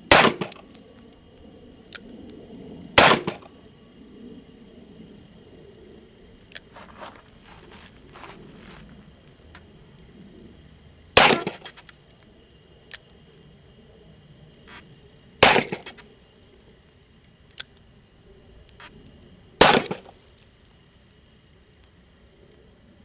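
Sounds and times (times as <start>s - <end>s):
handgun shots with echo: 0.1s - 0.6s, 3.0s - 3.4s, 11.2s - 11.7s, 15.4s - 15.9s, 19.6s - 20.1s.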